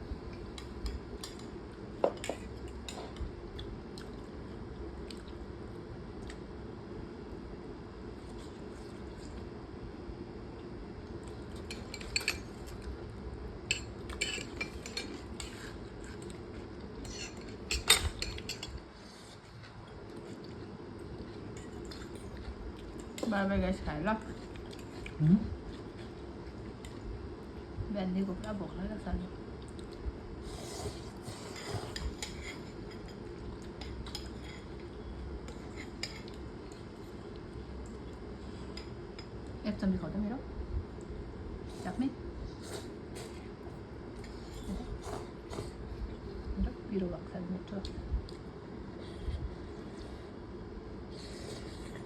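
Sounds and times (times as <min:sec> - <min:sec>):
steady low hum: 0:00.0 - 0:52.0
cutlery clinking against a bowl: 0:11.6 - 0:12.6, 0:13.7 - 0:16.3, 0:17.0 - 0:18.8.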